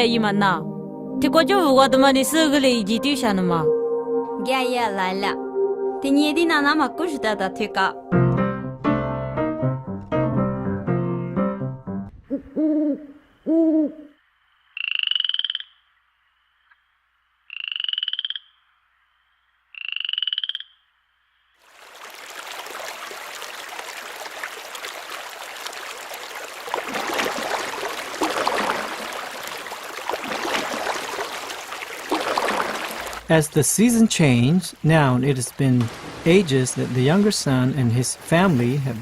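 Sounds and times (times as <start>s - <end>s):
low hoots: 12.3s - 14.2s
running water: 21.6s - 39.0s.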